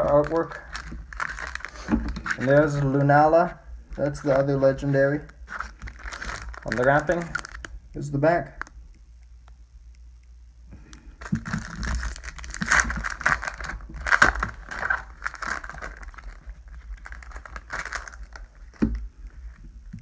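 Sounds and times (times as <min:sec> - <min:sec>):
foil wrapper crinkling and tearing: 0:00.0 - 0:03.3, 0:04.0 - 0:07.8, 0:11.2 - 0:19.7.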